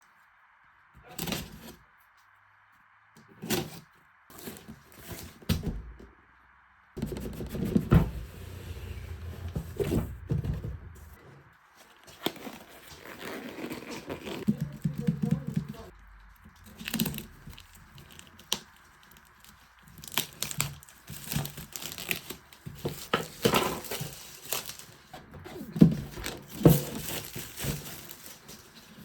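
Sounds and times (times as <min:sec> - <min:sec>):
handling knocks and scrapes: 0:07.0 - 0:16.0, 0:20.5 - 0:29.0.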